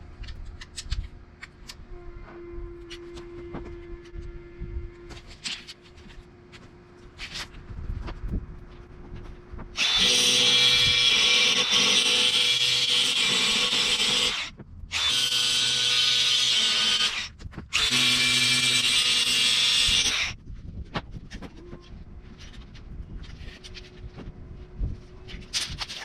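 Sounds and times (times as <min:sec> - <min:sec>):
angle grinder grinding metal: 0:09.8 - 0:20.4.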